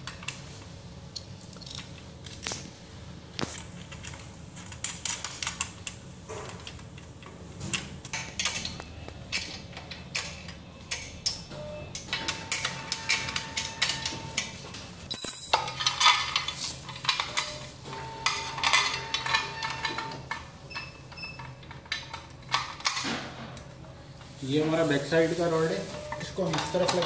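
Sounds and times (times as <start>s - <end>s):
metal parts and tools clinking: 15.1s - 17.6s, 18.2s - 23.7s.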